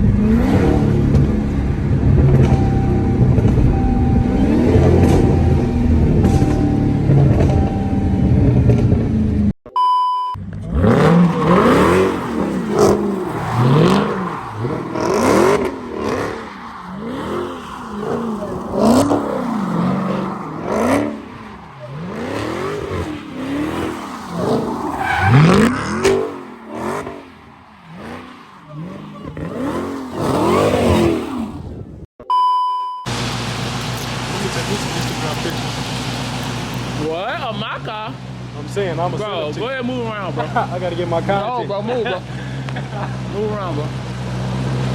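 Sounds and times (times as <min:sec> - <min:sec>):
car engine revving: 0:00.0 - 0:09.5, 0:10.4 - 0:32.0, 0:33.1 - 0:44.9
short electronic beep: 0:02.5 - 0:08.4, 0:09.7 - 0:10.4, 0:32.2 - 0:33.1.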